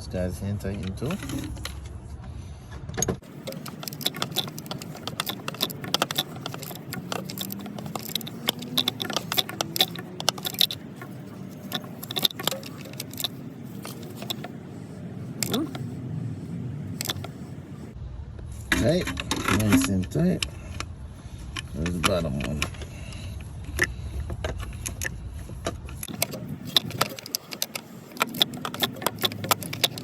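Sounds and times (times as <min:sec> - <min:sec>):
ratchet wrench clicking: 0:03.2 - 0:15.9, 0:17.0 - 0:17.4, 0:21.5 - 0:30.0.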